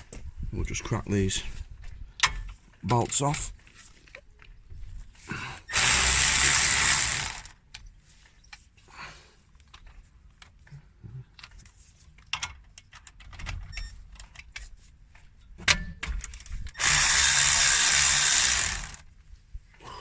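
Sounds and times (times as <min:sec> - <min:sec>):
power tool running: 0:05.7 - 0:07.6, 0:16.8 - 0:19.0
ratchet clicking: 0:05.7 - 0:07.6, 0:16.3 - 0:19.0.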